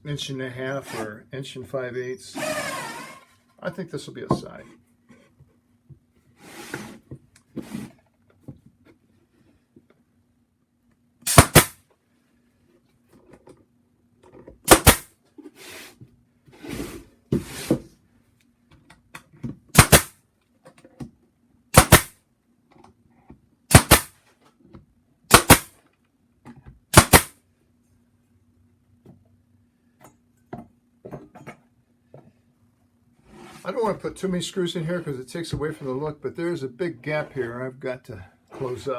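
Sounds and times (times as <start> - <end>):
nail gun firing into wood: 11.2 - 11.8, 14.6 - 15.1, 19.7 - 20.2, 21.7 - 22.2, 23.7 - 24.2, 25.3 - 25.8, 26.9 - 27.4.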